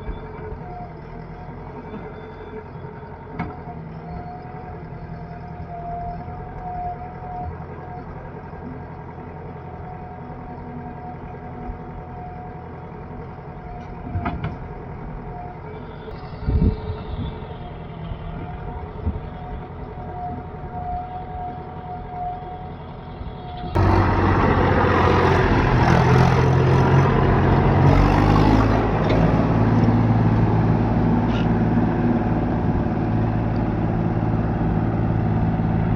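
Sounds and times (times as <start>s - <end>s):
diesel machinery running: 0.0s - 35.9s
close engine running: 22.7s - 35.9s.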